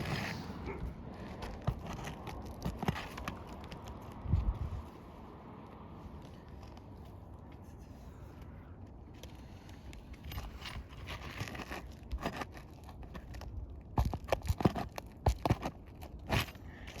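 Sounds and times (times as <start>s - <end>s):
shingle scraping and tearing: 1.1s - 4.2s, 10.2s - 17.0s.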